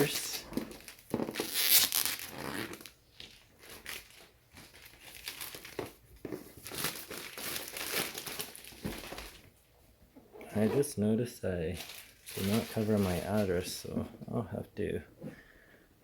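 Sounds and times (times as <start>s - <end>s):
plastic shrink wrap tearing: 0.0s - 9.4s, 11.7s - 13.7s.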